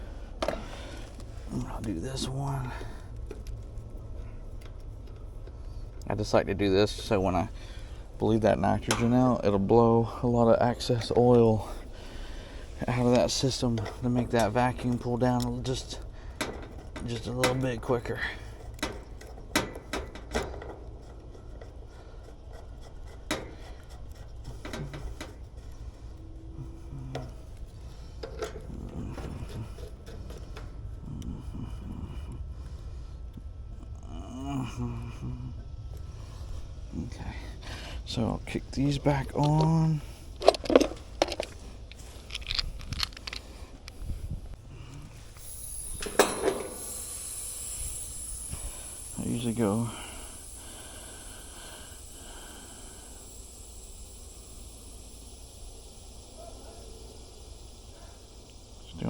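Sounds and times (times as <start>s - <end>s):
low hum: 0.0s - 59.0s
high gas hiss through hoses: 11.3s - 42.3s, 43.4s - 59.0s
hose fittings clicking: 39.2s - 44.1s.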